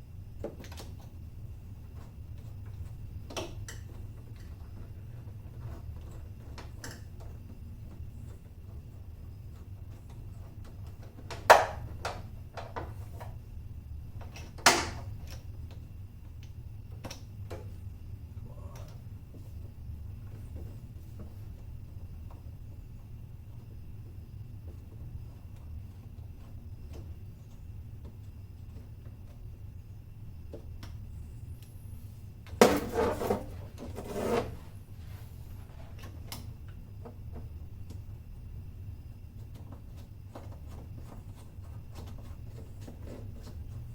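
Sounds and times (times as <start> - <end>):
low steady hum: 0.0 - 43.9
loud scraping rustle: 32.6 - 35.4.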